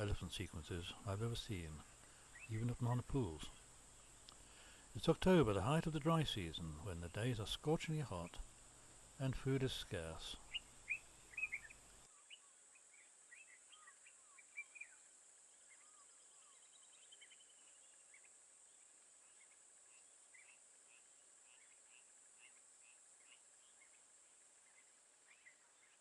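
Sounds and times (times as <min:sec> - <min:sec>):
high-pitched hiss: 0:00.0 - 0:26.0
bird chirps and calls: 0:10.2 - 0:12.5.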